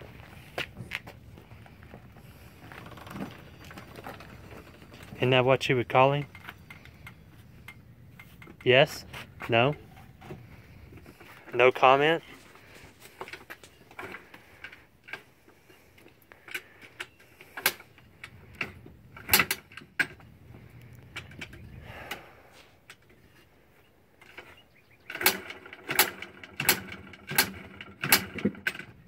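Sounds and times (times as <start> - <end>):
engine low rumble: 0.0 - 29.0
kick-start lever clanking: 25.1 - 28.9.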